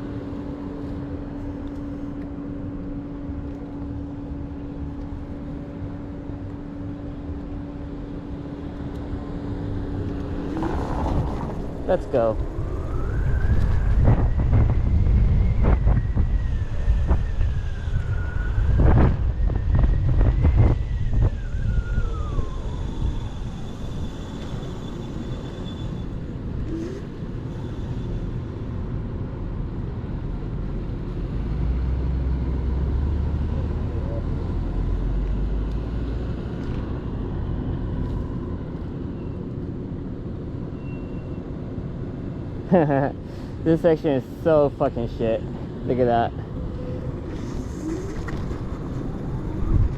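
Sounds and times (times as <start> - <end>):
electric scooter motor whine: 0.0 - 29.3, 46.4 - 49.9
wind rumble on microphone: 0.0 - 42.8, 44.9 - 49.9
road noise: 0.0 - 49.9
low rumble: 0.6 - 24.4.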